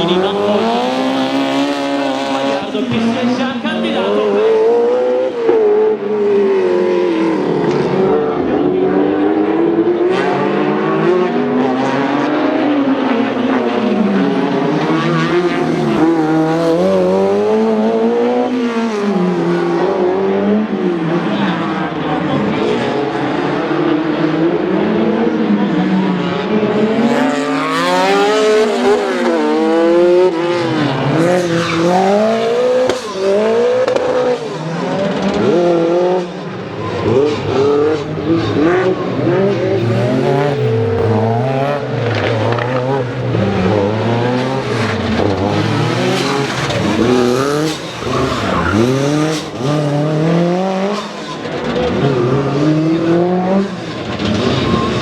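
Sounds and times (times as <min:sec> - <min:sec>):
race car engine revving: 0:00.0 - 0:55.0
tyre squeal: 0:46.1 - 0:49.7, 0:54.2 - 0:55.0.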